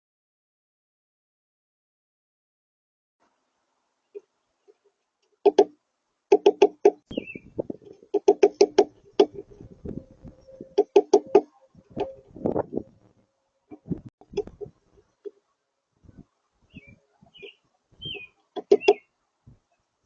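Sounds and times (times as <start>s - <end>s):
bird bill knocking on seed: 6.3s - 7.1s, 8.1s - 9.4s.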